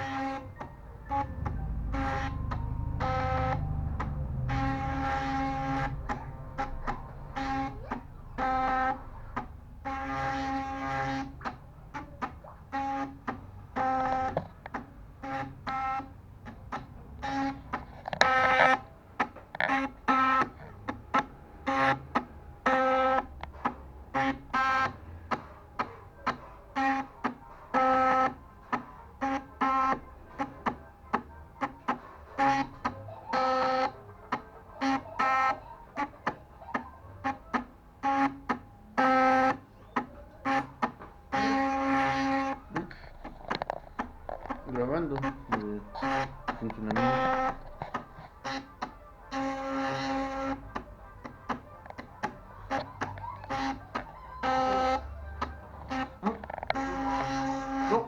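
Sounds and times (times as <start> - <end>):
stepper motors whining: 0.0 - 26.1, 38.0 - 58.0.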